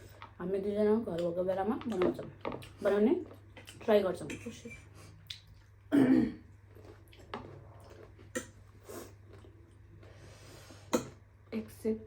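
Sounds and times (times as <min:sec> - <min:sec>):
person chewing: 0:05.1 - 0:05.9, 0:06.5 - 0:10.1.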